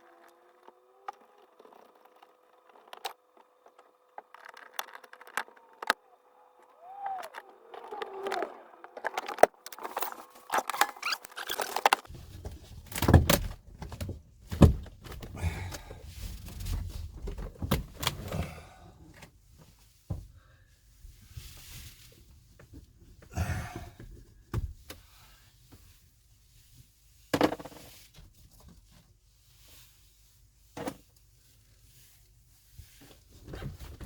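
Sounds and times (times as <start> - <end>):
dashboard panels knocking and rattling: 12.2 - 15.4.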